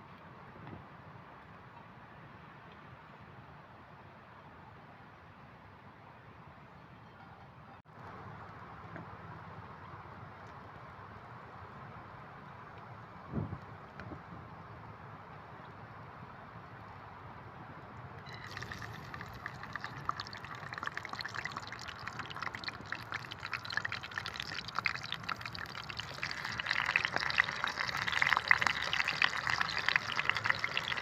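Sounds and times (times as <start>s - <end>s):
food sizzling in hot oil: 18.3s - 31.0s.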